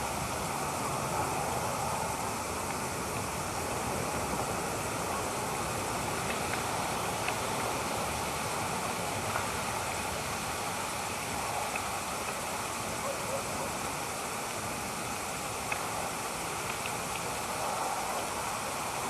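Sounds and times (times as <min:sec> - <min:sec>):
faint ticks: 0:06.2 - 0:07.7, 0:11.5 - 0:13.2, 0:15.6 - 0:18.2.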